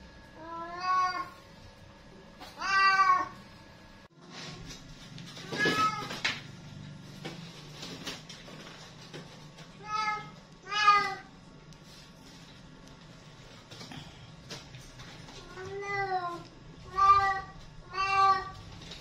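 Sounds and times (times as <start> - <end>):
cat meowing: 15.5 - 18.6.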